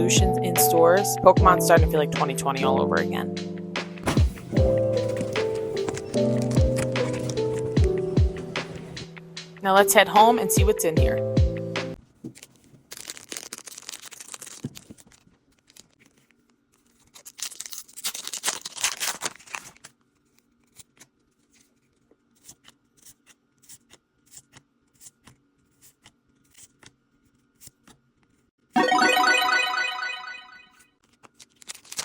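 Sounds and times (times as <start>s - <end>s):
foil wrapper tearing: 12.4s - 16.1s, 16.8s - 20.0s, 31.2s - 32.0s.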